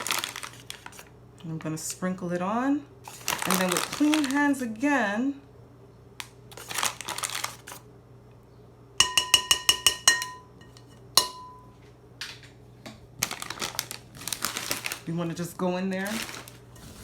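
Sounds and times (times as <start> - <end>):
powder rustling: 0.0 - 1.7, 3.1 - 4.8, 6.5 - 7.8, 13.2 - 17.0
utensil clinking on bowl rim: 9.0 - 11.7.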